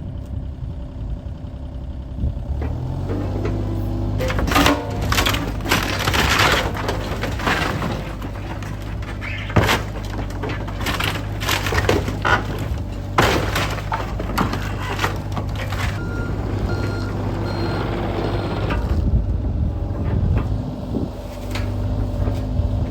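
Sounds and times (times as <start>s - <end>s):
heavy machine engine running: 0.0s - 22.9s
wooden cabin cracking and crashing: 2.7s - 17.3s
debris falling: 2.7s - 19.2s.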